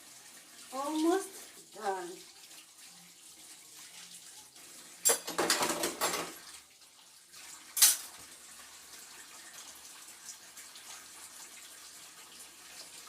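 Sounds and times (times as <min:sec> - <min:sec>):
faint running water: 0:00.0 - 0:13.0
dishes clattering: 0:05.0 - 0:06.4, 0:07.8 - 0:08.2.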